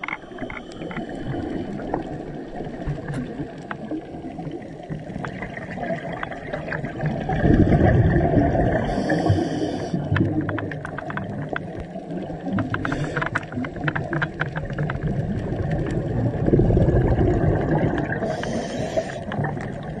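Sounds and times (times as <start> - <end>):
sharp crackling clicks: 0.0 - 5.4, 8.9 - 16.5
underwater exhaled bubbles: 0.0 - 20.0
regulator inhale hiss: 0.2 - 1.8, 8.8 - 10.1, 12.8 - 13.5, 18.2 - 19.3.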